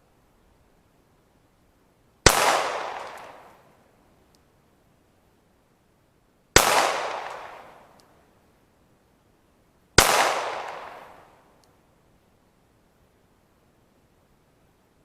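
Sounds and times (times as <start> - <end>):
pistol shots echoing: 2.3 - 3.5, 6.6 - 7.8, 10.0 - 11.3.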